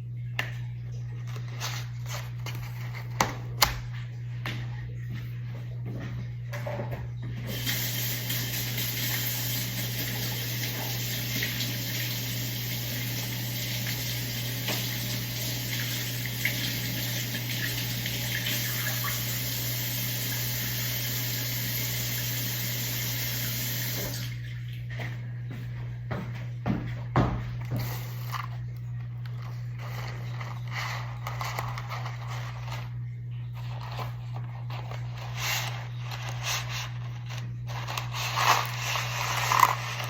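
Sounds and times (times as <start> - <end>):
low electrical hum: 0.0 - 40.0
water running from a tap: 7.5 - 24.9.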